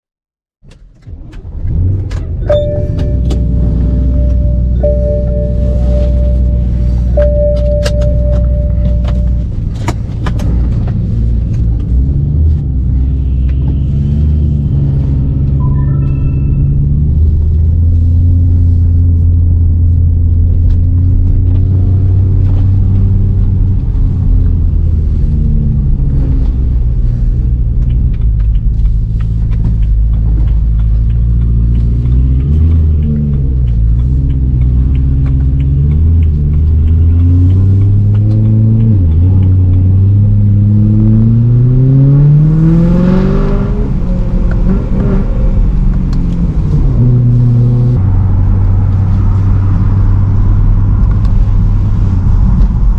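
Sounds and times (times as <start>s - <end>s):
car engine accelerating: 0.7s - 52.9s.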